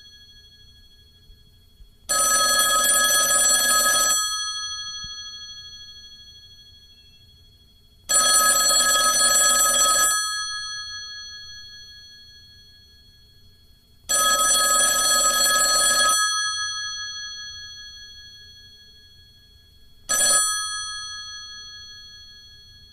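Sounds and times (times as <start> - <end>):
telephone bell ringing: 2.1 - 7.2, 8.1 - 13.0, 14.1 - 19.5, 20.1 - 22.9.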